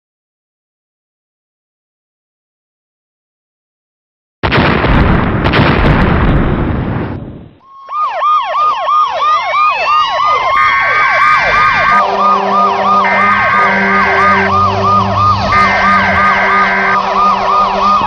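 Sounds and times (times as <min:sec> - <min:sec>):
emergency vehicle sirens: 0:07.6 - 0:18.0
long horn blasts: 0:10.6 - 0:18.0.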